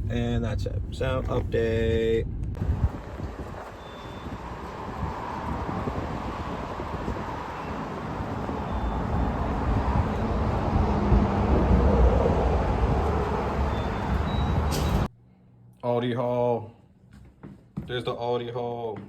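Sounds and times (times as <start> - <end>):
road noise: 0.0 - 15.1
car engine: 2.4 - 15.1.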